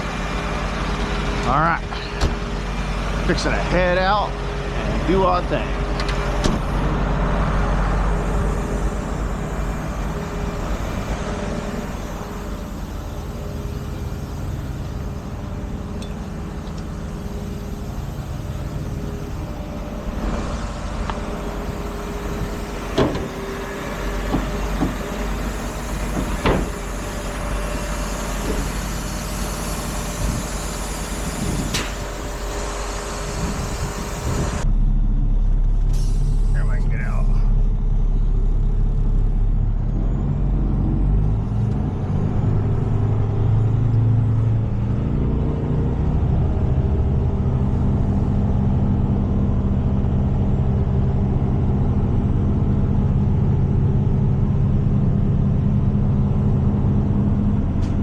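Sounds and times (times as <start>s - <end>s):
tow truck engine running: 0.0s - 58.0s.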